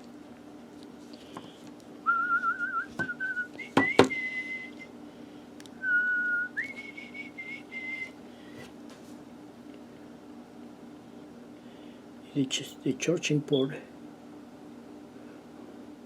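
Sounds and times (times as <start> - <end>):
faint steady hum: 0.0 - 16.0
person whistling: 2.0 - 4.9, 5.8 - 8.2.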